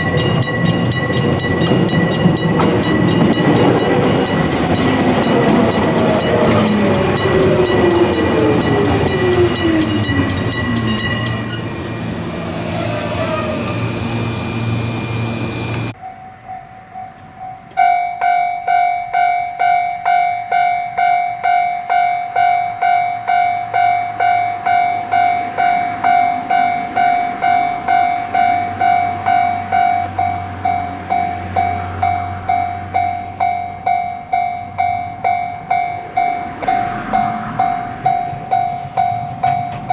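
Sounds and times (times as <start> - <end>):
pulsing electronic crossing alarm: 0.0 - 16.0
crossing bell ringing: 0.0 - 39.9
train passing with falling whine: 0.0 - 39.9.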